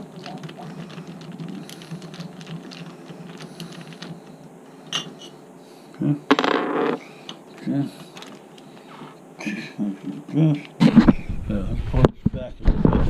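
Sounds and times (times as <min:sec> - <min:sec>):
small hard parts clicking: 0:00.0 - 0:05.0
steady low hum: 0:00.0 - 0:13.0.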